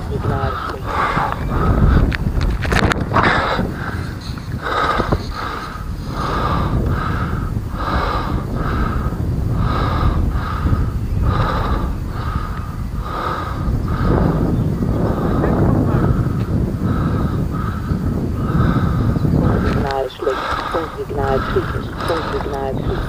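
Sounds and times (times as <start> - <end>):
person breathing hard: 0.0 - 23.0
wind rumbling on microphone: 0.0 - 23.0.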